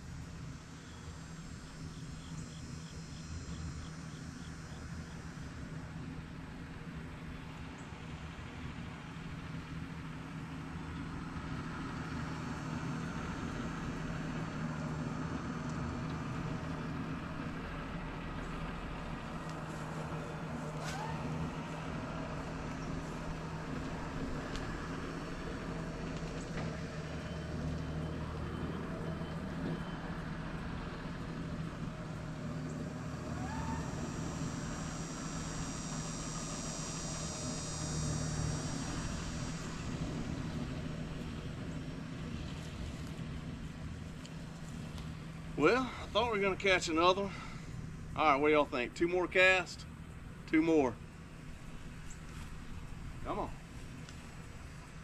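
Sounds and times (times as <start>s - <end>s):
low motor hum: 0.0s - 55.0s
high shrill buzz: 33.2s - 39.9s.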